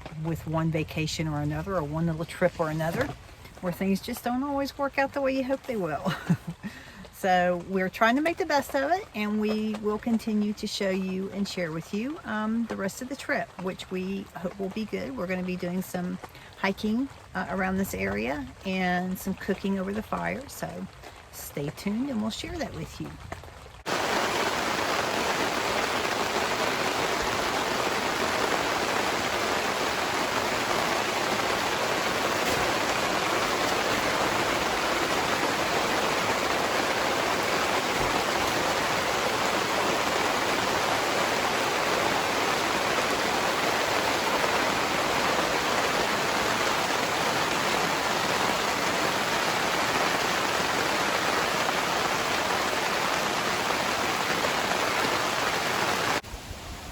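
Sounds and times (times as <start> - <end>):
heavy rain pouring: 0.0 - 56.9.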